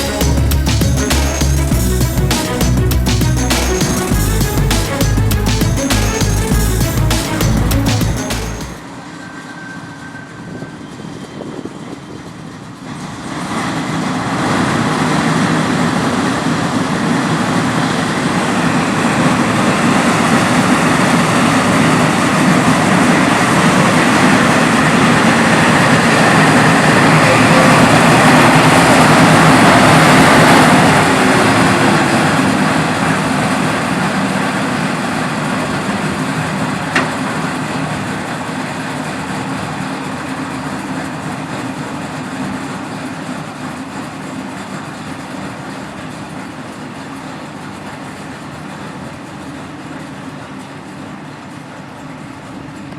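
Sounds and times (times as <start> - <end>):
loud rushing noise: 0.0 - 8.8, 13.3 - 33.6
tram motor hum: 0.0 - 8.9.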